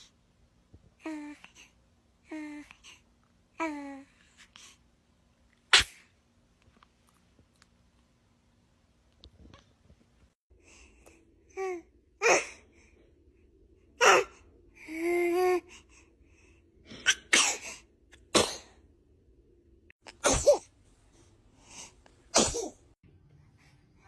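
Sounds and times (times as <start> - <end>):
baby sneezing: 5.7 - 6.1, 14.0 - 14.3, 17.0 - 17.8, 18.4 - 18.7, 20.1 - 20.7, 22.4 - 22.8.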